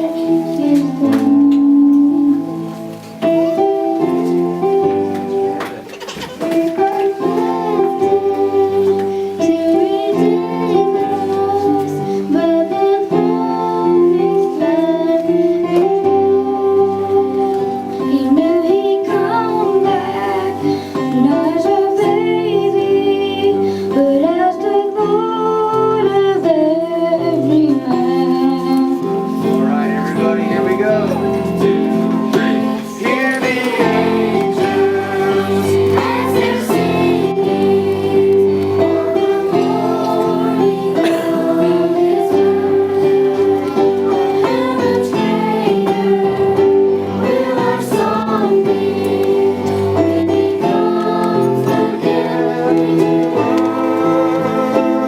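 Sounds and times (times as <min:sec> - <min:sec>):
instrumental melody line: 0:27.6 - 0:55.0.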